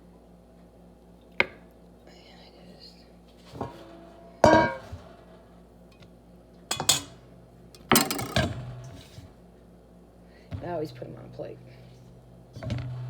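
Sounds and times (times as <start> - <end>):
dishes and cutlery clinking: 3.5 - 5.1, 6.7 - 7.2.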